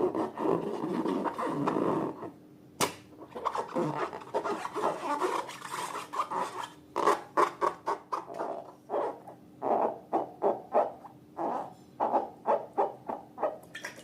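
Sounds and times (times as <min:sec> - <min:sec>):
sharp click: 0:02.8 - 0:03.1.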